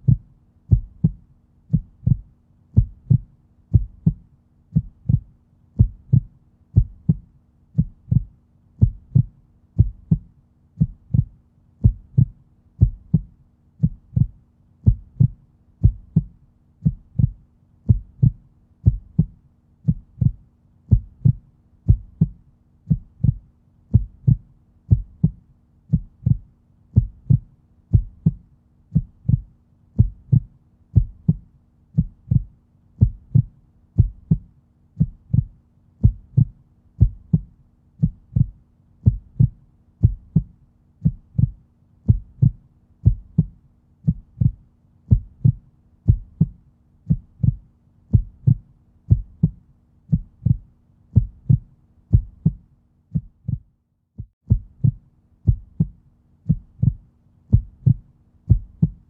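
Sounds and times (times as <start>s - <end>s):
faint steady hum: 0.0s - 53.7s, 54.5s - 59.0s
heartbeat thumps: 0.0s - 59.0s.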